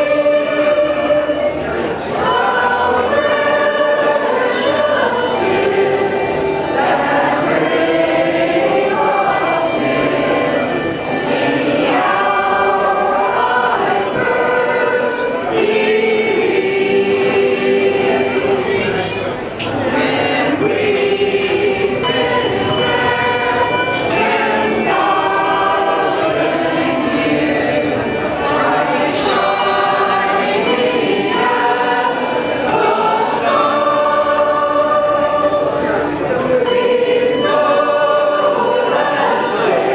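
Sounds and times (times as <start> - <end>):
voices singing a hymn: 0.0 - 39.9.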